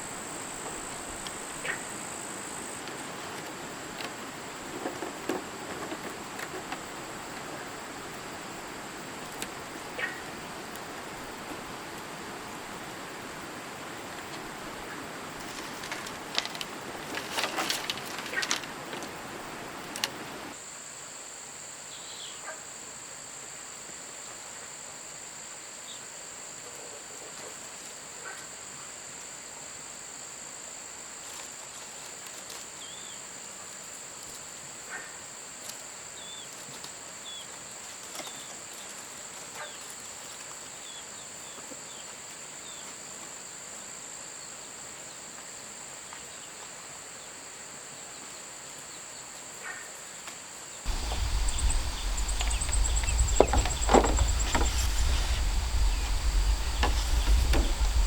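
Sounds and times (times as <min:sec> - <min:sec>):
bird chirps: 0:50.9 - 0:58.0
faint clicks: 0:50.9 - 0:58.0.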